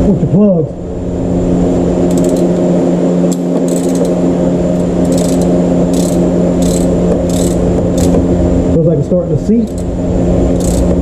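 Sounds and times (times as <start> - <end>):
loud steady hum: 0.0 - 11.0
socket ratchet clicking: 2.1 - 2.5, 3.3 - 4.2, 4.8 - 8.2, 9.6 - 9.9, 10.6 - 10.9.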